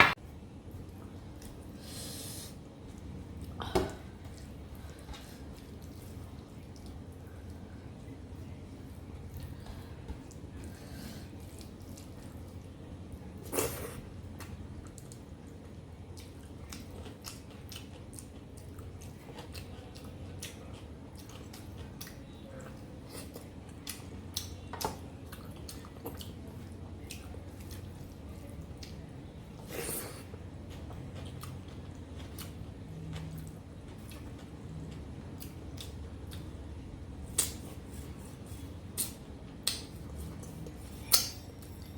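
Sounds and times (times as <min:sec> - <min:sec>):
steady low hum: 0:00.0 - 0:41.9
chewing with wet mouth clicks: 0:04.2 - 0:08.3, 0:11.4 - 0:12.7, 0:14.2 - 0:37.8, 0:38.9 - 0:41.9.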